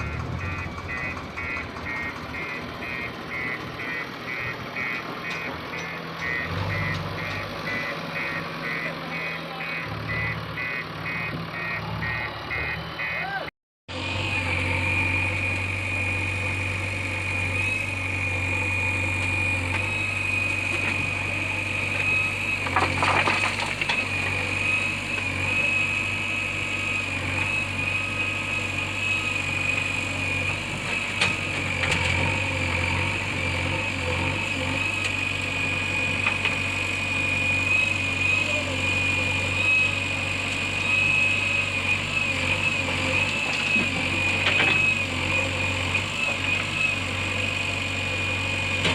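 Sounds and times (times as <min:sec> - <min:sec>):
diesel engine idling: 0:00.0 - 0:48.9.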